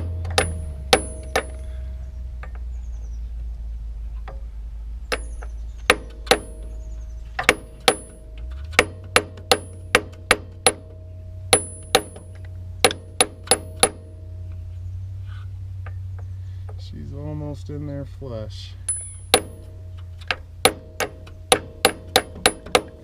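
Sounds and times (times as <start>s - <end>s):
hammer striking metal: 0.0s - 1.7s, 5.1s - 6.8s, 7.4s - 14.4s, 18.9s - 19.9s, 20.6s - 23.0s
steady low hum: 0.0s - 23.0s.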